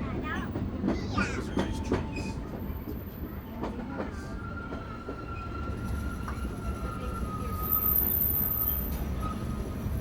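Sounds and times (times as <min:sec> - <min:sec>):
train cars rumbling on rails: 0:00.0 - 0:10.0.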